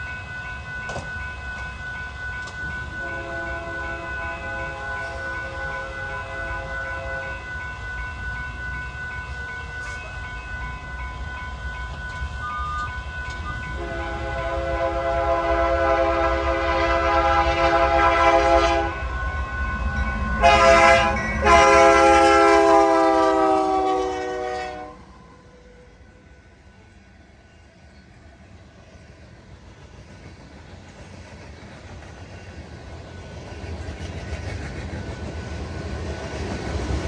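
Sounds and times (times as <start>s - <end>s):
rumble of passing train: 0.0s - 37.0s
locomotive air horn blasts: 3.0s - 7.5s, 13.5s - 19.1s, 20.4s - 25.1s.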